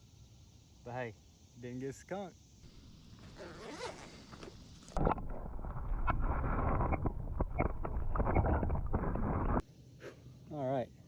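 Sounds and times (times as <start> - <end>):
faint open-air background: 0.0 - 5.1, 9.6 - 11.0
wind rumbling on microphone: 3.8 - 9.6.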